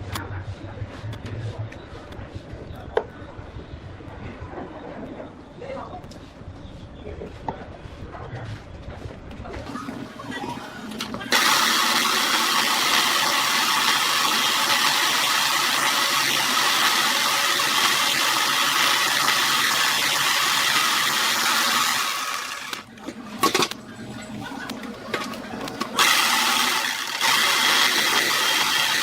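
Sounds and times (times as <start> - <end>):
power tool motor running: 11.0 - 22.9, 26.0 - 29.0.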